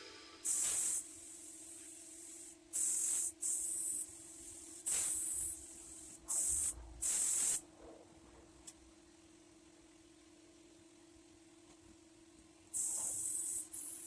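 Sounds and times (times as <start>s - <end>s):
paint spray gun hissing: 0.0s - 7.6s, 12.7s - 14.0s
faint steady hum: 0.0s - 14.0s.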